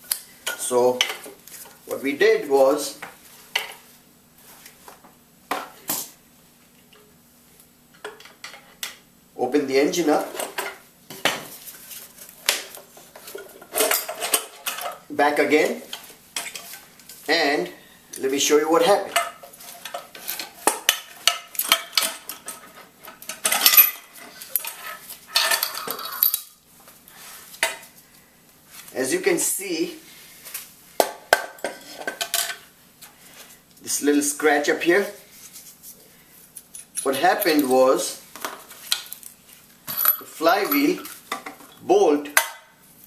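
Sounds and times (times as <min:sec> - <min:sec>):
metal parts clinking: 0:21.5 - 0:26.6, 0:39.1 - 0:41.1.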